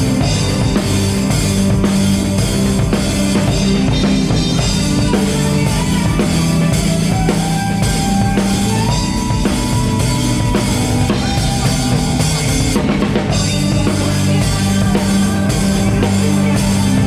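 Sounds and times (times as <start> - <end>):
bass drum and snare: 0.0 - 17.0
bass line: 0.0 - 17.0.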